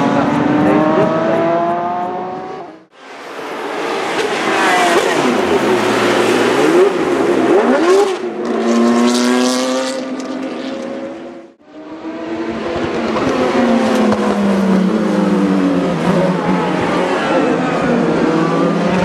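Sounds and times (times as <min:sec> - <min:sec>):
race car engines revving: 0:00.0 - 0:19.0.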